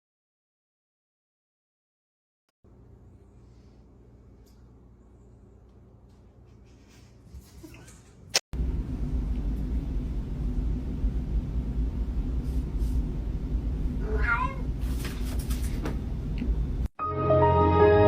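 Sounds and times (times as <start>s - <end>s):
steady low rumble: 8.6s - 14.9s
cat meowing: 14.0s - 14.7s.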